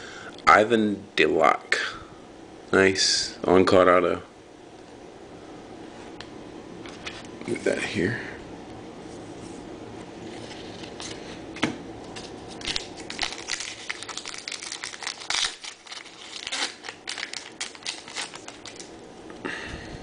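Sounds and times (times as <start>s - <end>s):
card pack wrappers tearing: 12.2s - 18.9s.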